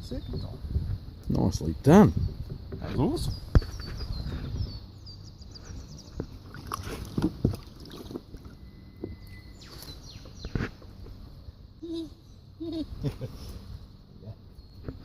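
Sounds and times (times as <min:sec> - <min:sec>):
birds chirping faintly: 0:00.0 - 0:15.0
light water noise: 0:05.6 - 0:11.3.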